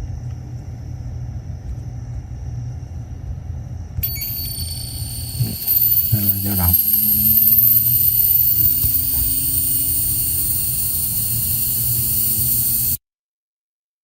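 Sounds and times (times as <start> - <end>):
machine hum and hiss: 0.0 - 13.0
high-pitched whine: 4.0 - 13.0.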